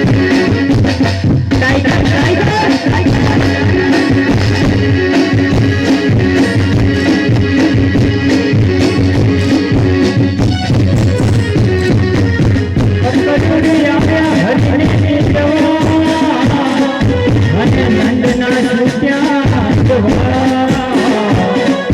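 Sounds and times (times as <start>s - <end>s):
steady percussion beat: 0.0s - 21.9s
folk music with held notes: 2.5s - 18.9s.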